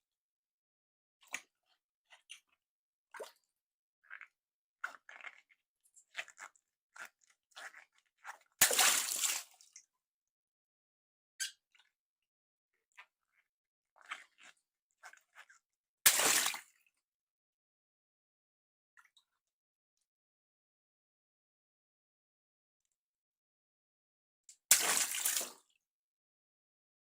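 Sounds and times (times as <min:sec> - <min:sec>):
water splashing: 0:08.6 - 0:09.4, 0:24.7 - 0:25.5.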